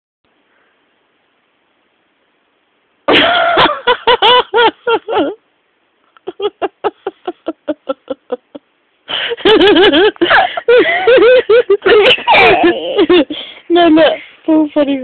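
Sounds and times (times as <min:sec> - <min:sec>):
high-pitched laughter: 0:03.1 - 0:05.4, 0:06.2 - 0:13.3.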